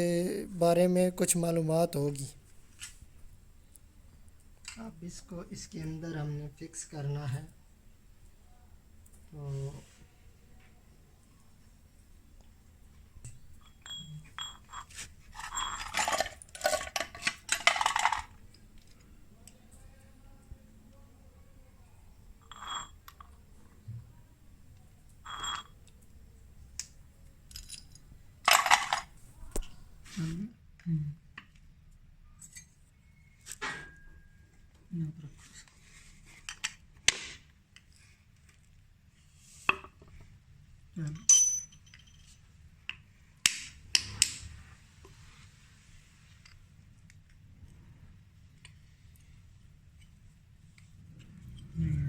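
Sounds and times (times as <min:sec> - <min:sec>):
metal parts clattering: 0:13.8 - 0:18.4, 0:27.5 - 0:29.1.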